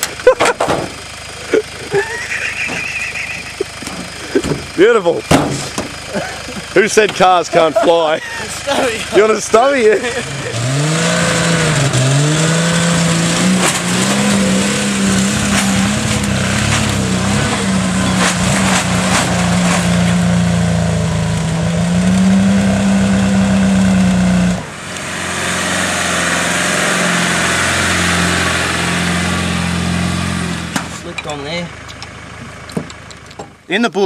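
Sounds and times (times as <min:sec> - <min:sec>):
knocks and clunks: 0:00.0 - 0:01.0, 0:03.8 - 0:06.0, 0:07.0 - 0:07.3, 0:30.7 - 0:33.6
engine revving and labouring: 0:00.0 - 0:33.6.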